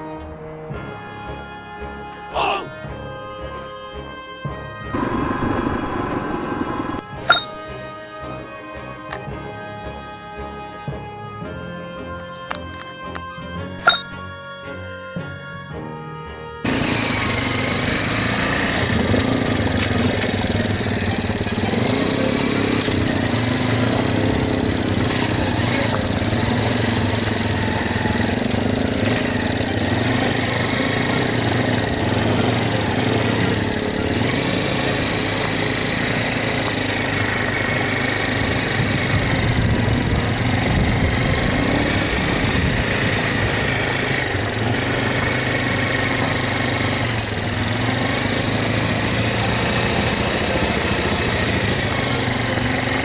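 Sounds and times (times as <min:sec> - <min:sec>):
motorcycle engine running: 0:04.9 - 0:07.5, 0:16.7 - 0:53.0
steady rushing noise: 0:20.4 - 0:45.4.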